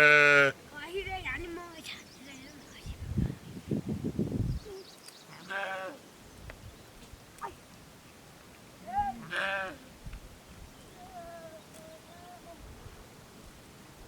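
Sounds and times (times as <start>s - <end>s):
sheep bleating: 0.0s - 0.6s, 5.4s - 6.0s, 9.0s - 9.8s.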